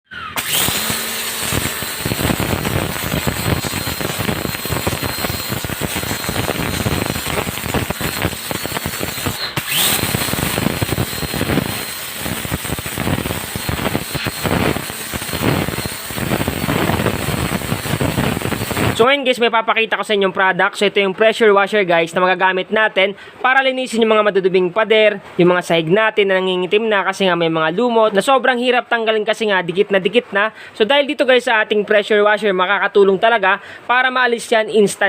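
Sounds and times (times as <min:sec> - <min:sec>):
faint high whine: 0:00.1 - 0:19.3
pressure washer spraying: 0:00.4 - 0:19.0.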